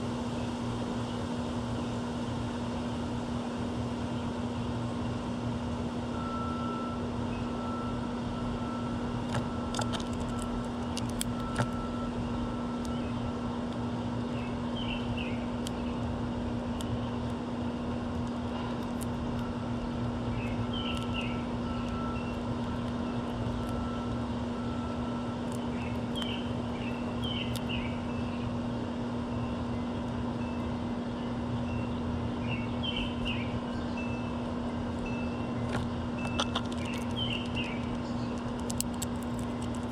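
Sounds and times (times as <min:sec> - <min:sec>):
low mechanical hum: 0:00.0 - 0:39.9
small birds chirping: 0:09.2 - 0:39.9.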